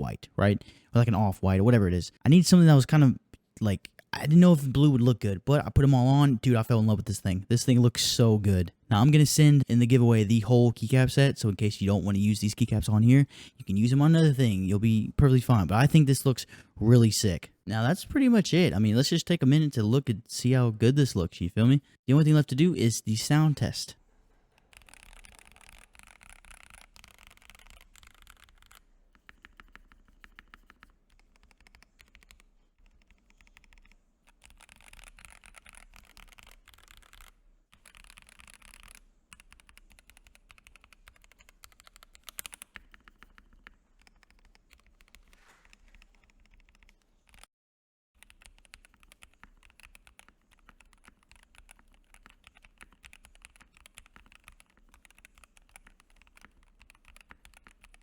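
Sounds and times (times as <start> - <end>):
mechanical keyboard typing: 24.7 - 47.5, 48.2 - 58.0.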